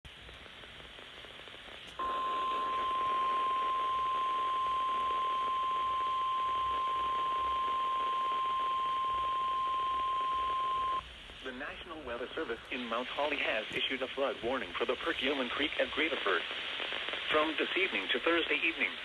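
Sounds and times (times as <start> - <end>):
radio hiss: 0.1 - 19.0
steady high alarm tone: 2.0 - 11.0.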